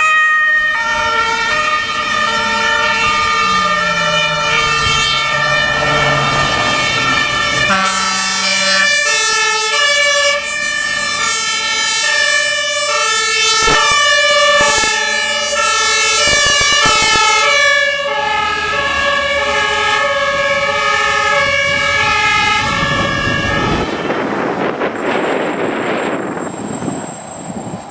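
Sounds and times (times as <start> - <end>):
two-tone fire engine sirens: 0.0 - 27.9
truck engine noise: 0.5 - 27.9
short low horn note: 4.4 - 9.2.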